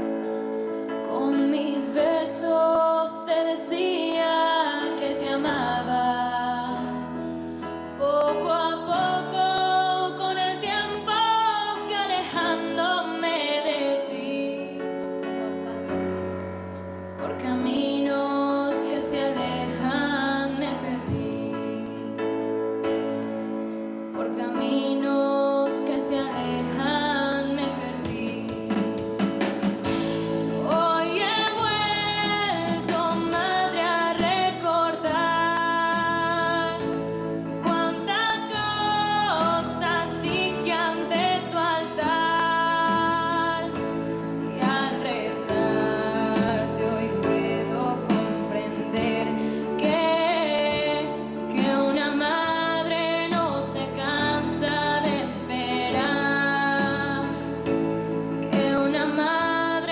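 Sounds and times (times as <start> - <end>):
person singing devotional song: 0.0 - 15.5, 17.1 - 59.9
held low instrumental chords: 28.0 - 52.0.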